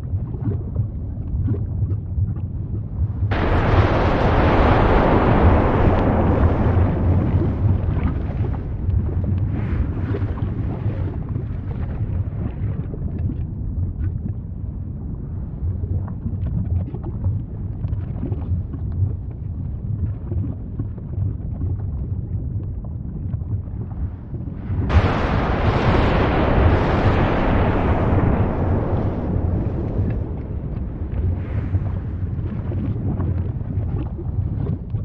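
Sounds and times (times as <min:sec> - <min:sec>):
volcano rumbling: 0:00.0 - 0:17.6, 0:20.4 - 0:35.0
faint crackles: 0:03.2 - 0:13.4, 0:20.0 - 0:35.0.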